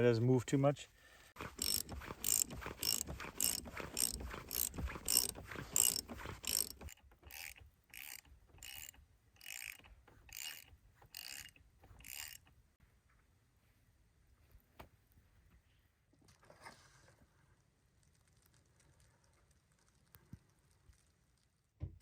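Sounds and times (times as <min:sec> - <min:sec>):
ratcheting crank clicking: 0:01.4 - 0:12.5.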